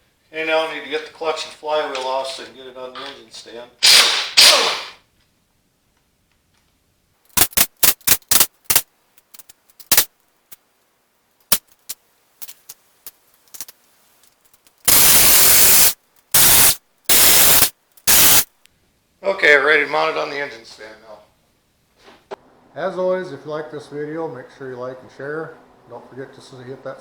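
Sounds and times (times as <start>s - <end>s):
air impact wrench running: 3.8s - 4.9s, 14.9s - 18.4s.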